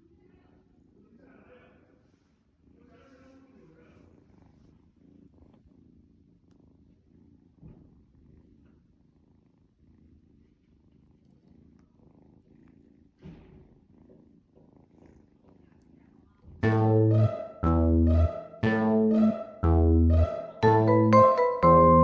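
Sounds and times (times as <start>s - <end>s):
kitten purring: 2.0s - 17.1s.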